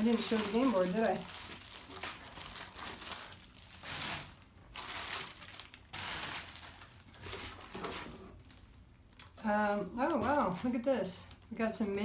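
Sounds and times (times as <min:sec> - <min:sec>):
plastic crinkling and rustling: 0:00.0 - 0:12.0.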